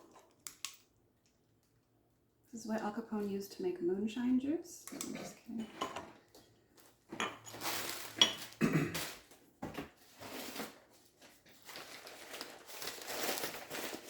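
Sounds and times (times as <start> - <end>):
glass dishes clinking: 7.1 - 7.6, 8.2 - 8.5
paper wrapping rustling: 7.5 - 9.4, 10.0 - 14.0.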